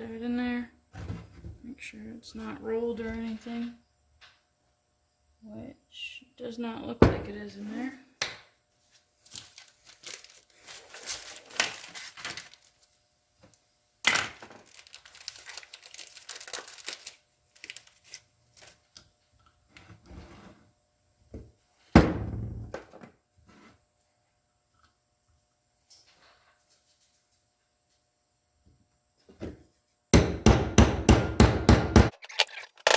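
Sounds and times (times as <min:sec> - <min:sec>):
rustling and crinkling: 0:08.8 - 0:13.6, 0:14.4 - 0:19.0.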